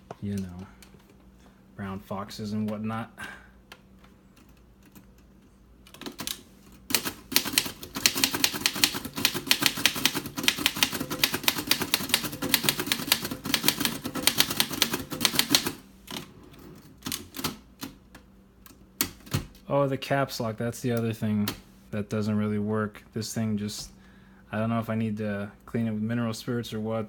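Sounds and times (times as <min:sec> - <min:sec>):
manual typewriter typing: 0:05.9 - 0:16.3, 0:17.0 - 0:18.0.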